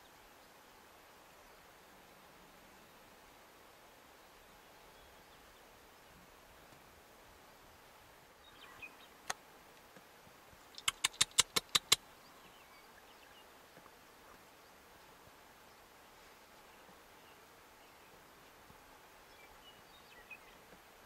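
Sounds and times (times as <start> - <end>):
loud sharp clicks: 10.8 - 12.0.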